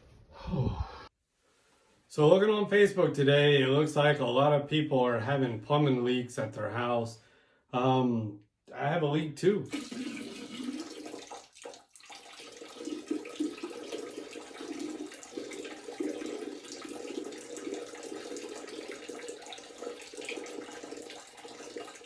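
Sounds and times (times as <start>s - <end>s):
man urinating into toilet water: 9.7s - 22.0s.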